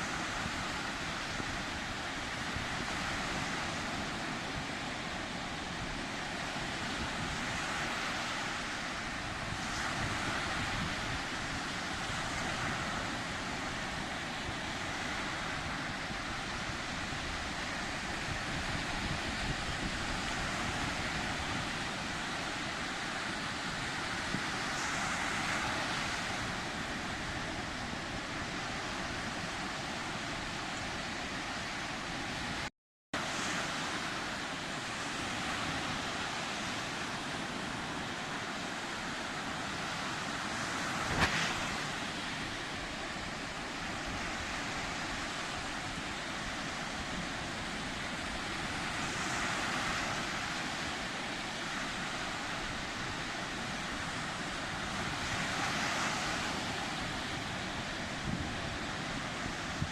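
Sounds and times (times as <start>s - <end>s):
waves washing on shore: 0.0s - 59.9s.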